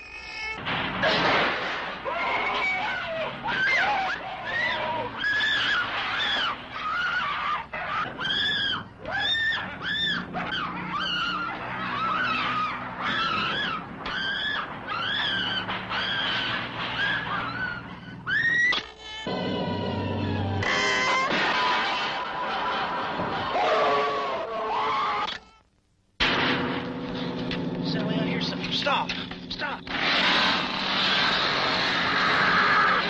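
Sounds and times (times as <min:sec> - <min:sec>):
high-pitched shrieks: 0:02.1 - 0:21.8, 0:29.9 - 0:33.0.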